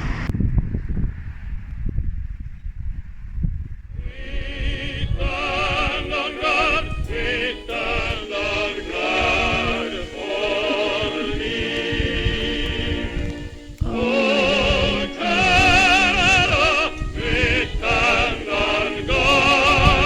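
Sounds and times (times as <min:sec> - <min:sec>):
operatic singing: 0:04.0 - 0:20.0.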